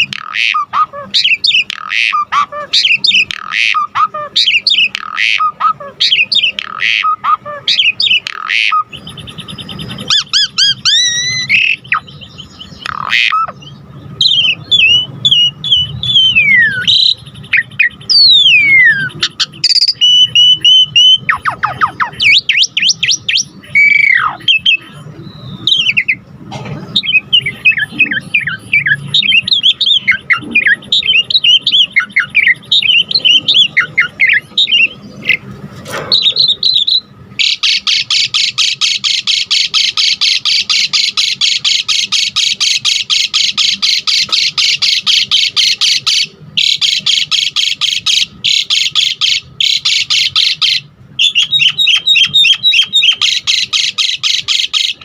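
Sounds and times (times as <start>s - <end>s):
starling singing: 0.0s - 55.0s.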